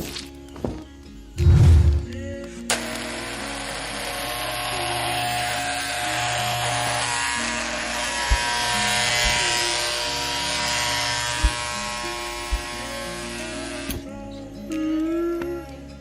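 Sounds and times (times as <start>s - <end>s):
background music: 0.0s - 16.0s
short low thumps: 1.4s - 2.2s
electric hair clippers buzzing: 2.7s - 14.1s.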